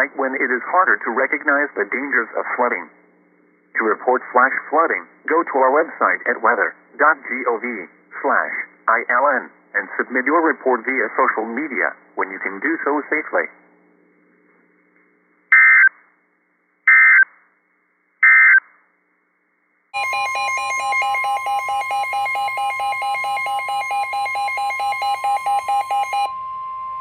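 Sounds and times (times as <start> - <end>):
rapidly pulsing alarm beep: 15.5 - 15.9, 16.9 - 17.3, 18.2 - 18.6, 20.0 - 27.0
steady alarm tone: 20.0 - 27.0.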